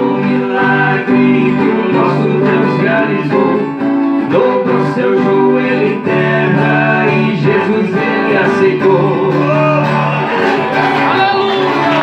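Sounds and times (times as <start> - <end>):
plucked acoustic guitars playing: 0.0 - 12.0.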